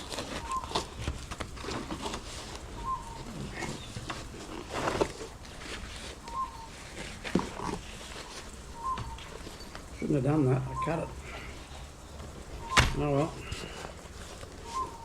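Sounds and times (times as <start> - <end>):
packaging rustling: 0.0 - 10.0, 11.5 - 15.0
short bird-like call: 2.8 - 3.9, 6.2 - 6.7, 8.7 - 9.3, 12.6 - 13.8, 14.6 - 15.0.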